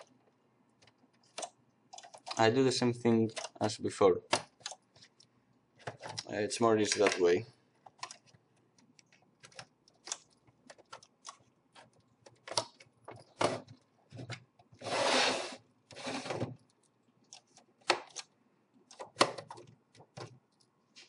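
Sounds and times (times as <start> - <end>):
scraping on plastic: 11.7 - 16.6.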